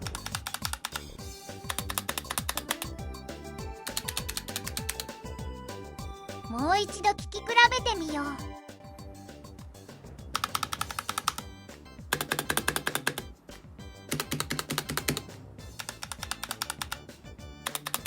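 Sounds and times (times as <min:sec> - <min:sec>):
rapid keyboard typing: 0:00.0 - 0:05.5, 0:10.3 - 0:11.5, 0:12.1 - 0:13.4, 0:14.1 - 0:18.0
background music: 0:00.0 - 0:18.0.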